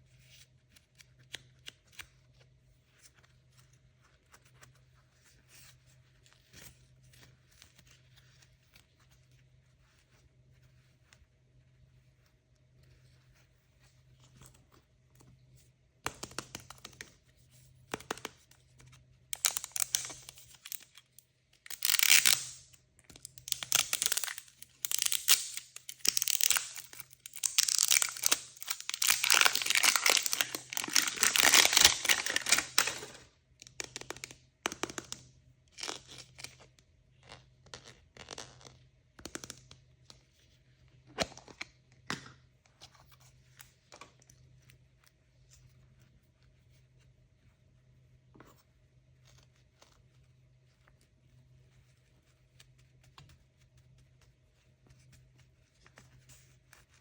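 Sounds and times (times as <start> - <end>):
packaging torn and crinkled: 19.4 - 20.9, 21.6 - 22.6, 23.2 - 33.3.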